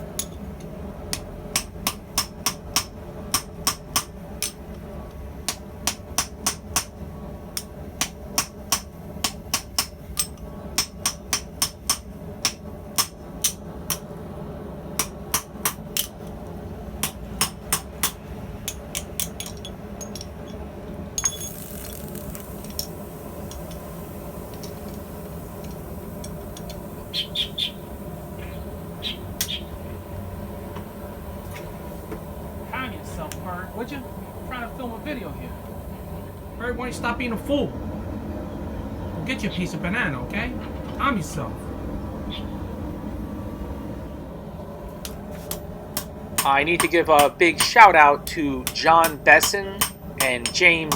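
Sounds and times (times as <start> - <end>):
steady low hum: 0.0 - 50.9
hammer ringing on hot steel: 1.1 - 4.6, 7.6 - 14.1, 45.5 - 50.9.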